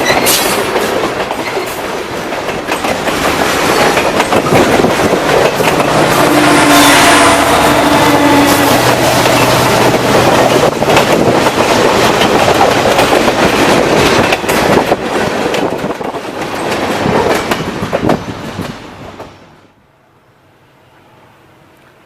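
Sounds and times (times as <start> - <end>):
train wheels clattering over rail joints: 0.0 - 6.8, 8.7 - 19.4.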